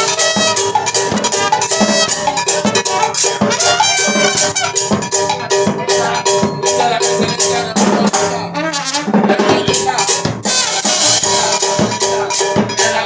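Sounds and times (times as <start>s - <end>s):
held brass notes: 0.0s - 5.2s, 7.9s - 11.8s
drum kit beat: 0.0s - 13.0s.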